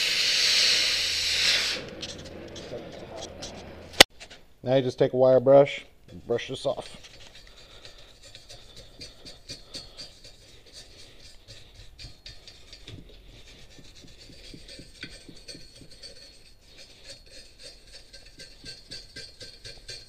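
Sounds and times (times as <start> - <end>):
wire brush scrubbing steel: 6.1 - 20.0.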